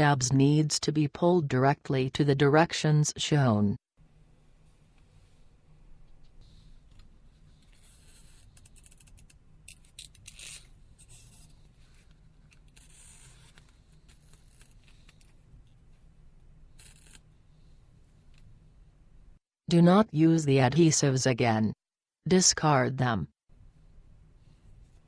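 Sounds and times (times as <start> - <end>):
adhesive tabs scraping and peeling: 7.6 - 15.4, 16.7 - 17.2.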